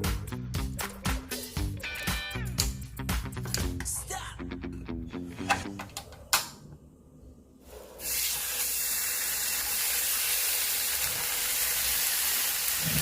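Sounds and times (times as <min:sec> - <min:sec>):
food sizzling in a frying pan: 0:08.0 - 0:13.0.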